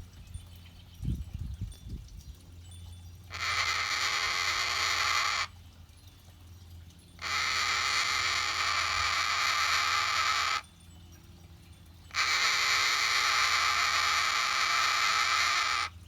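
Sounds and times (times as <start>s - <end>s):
cockatoo raspy hissing: 12.2s - 15.9s.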